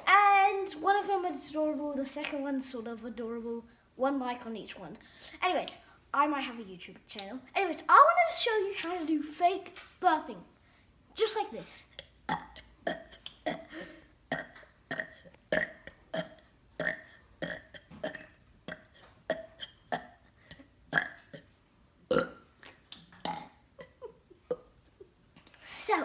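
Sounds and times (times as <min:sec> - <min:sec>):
child fake burping: 0:12.0 - 0:22.4, 0:23.2 - 0:24.7.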